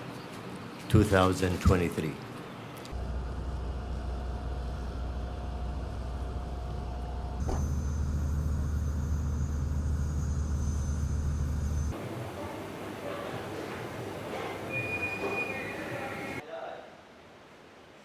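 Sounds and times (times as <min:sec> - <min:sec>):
high engine whine: 0:02.9 - 0:13.0
jet engines rumbling: 0:03.0 - 0:16.4.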